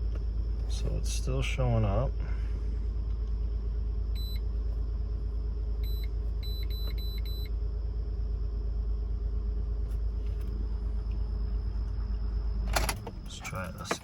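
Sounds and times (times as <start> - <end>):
car engine idling: 7.5 - 14.0.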